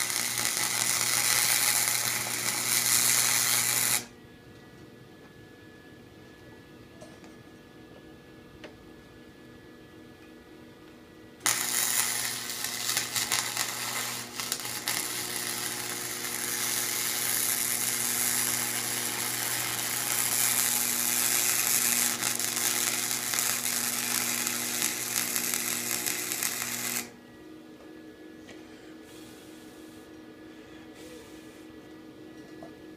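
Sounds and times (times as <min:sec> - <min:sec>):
arc welding crackling sizzle: 0:00.0 - 0:04.1, 0:11.4 - 0:27.2
welder electrical hum: 0:00.0 - 0:32.9.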